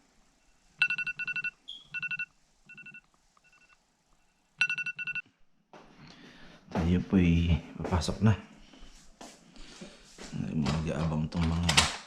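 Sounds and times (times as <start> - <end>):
electronic alarm beeping: 0.4 - 5.2.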